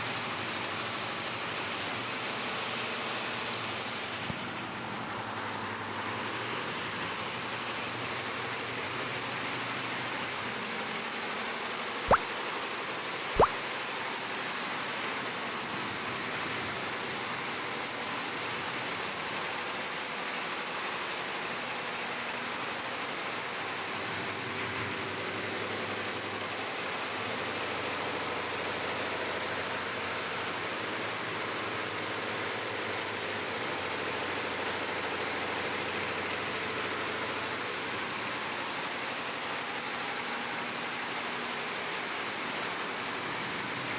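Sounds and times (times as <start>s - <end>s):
sharp clicks: 13.4s - 13.6s.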